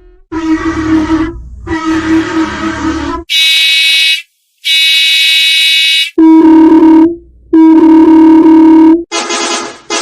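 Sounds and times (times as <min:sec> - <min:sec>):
bus horn blasts: 0:00.3 - 0:06.4.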